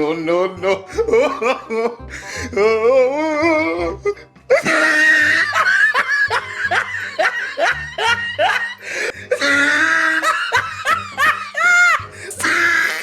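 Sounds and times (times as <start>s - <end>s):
bursts of laughter: 4.5s - 13.0s.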